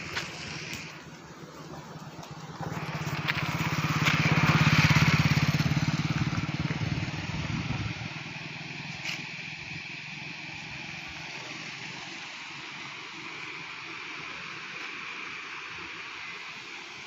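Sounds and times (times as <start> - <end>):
vehicle engine passing by: 1.6 - 12.0.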